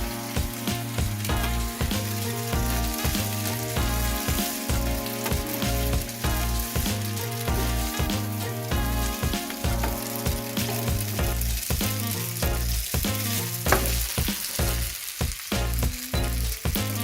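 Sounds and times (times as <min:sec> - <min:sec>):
background music with a beat: 0:00.0 - 0:17.0
food sizzling in a pan: 0:00.0 - 0:17.0
stirring: 0:00.0 - 0:17.0.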